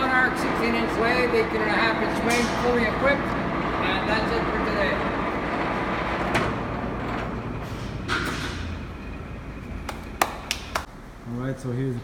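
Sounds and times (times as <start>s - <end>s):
lathe running: 0.0s - 7.6s.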